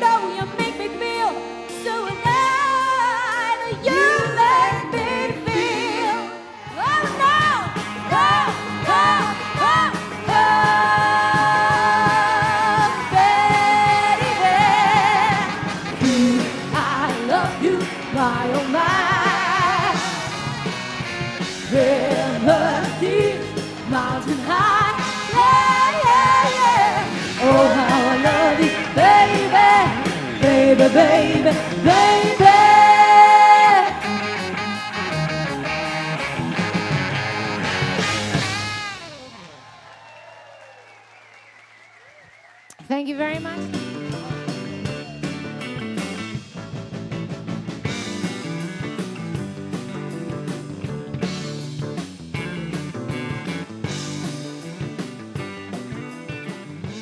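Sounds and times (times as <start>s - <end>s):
live pop band with female vocal: 0.0s - 20.8s, 21.4s - 34.7s.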